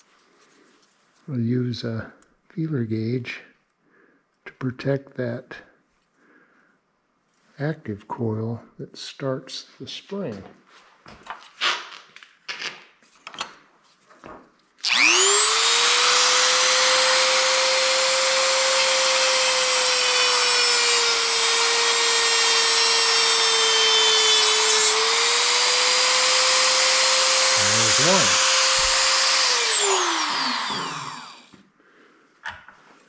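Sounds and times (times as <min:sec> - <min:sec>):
rotary tool grinding metal: 0:14.8 - 0:31.5.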